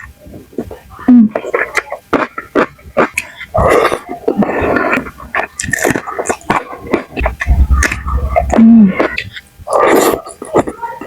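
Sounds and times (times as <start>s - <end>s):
mouth clicks: 0.0s - 10.9s
wet chewing and crunching: 0.0s - 11.0s.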